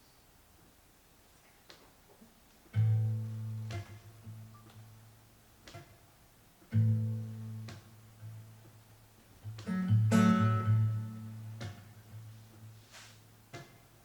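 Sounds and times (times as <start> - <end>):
guitar plucked notes and chords: 2.7 - 5.1, 5.7 - 12.8.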